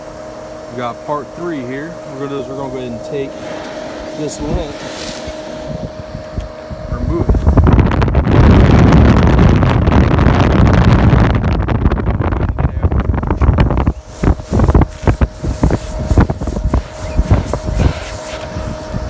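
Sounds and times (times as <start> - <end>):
faint steady hum: 0.0 - 12.0
wind buffeting microphone: 0.1 - 19.0.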